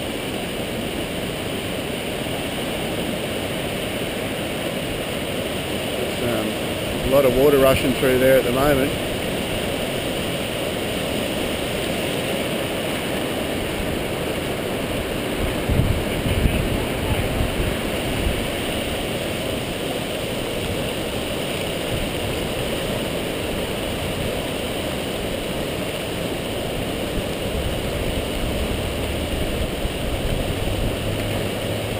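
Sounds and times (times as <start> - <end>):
floodwater rushing: 0.0 - 31.9.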